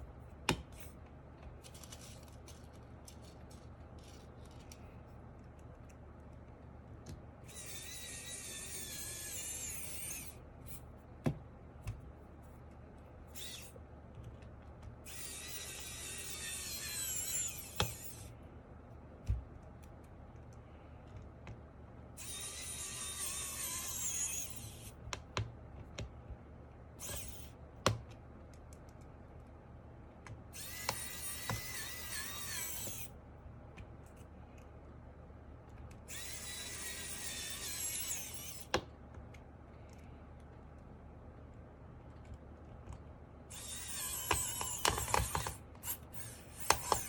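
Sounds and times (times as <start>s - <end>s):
electric screwdriver whirring: 13.4s - 13.7s, 15.0s - 18.3s, 27.0s - 27.5s, 36.1s - 38.7s, 43.5s - 47.0s.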